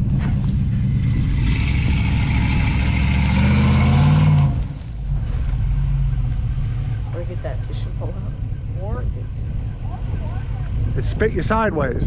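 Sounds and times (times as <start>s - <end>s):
truck engine revving hard: 0.0s - 6.8s.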